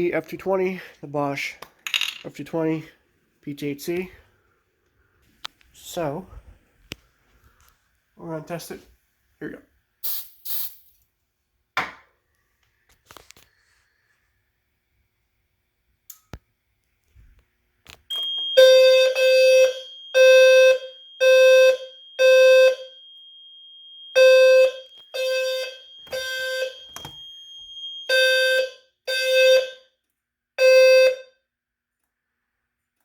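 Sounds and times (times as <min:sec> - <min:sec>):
fire alarm horn pulses: 0:18.1 - 0:23.2, 0:24.0 - 0:31.5.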